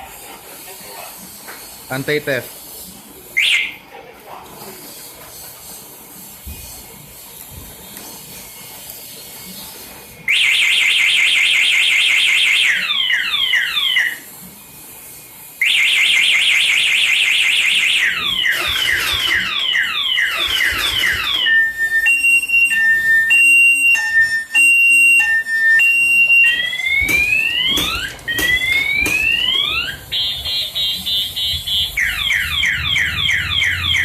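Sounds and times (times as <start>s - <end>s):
motorcycle alarm siren: 3.4s - 3.8s, 10.3s - 14.3s, 15.5s - 34.0s.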